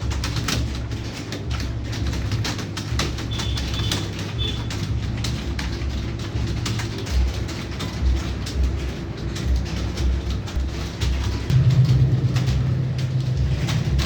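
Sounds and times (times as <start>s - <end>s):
low background rumble: 8.3s - 14.0s.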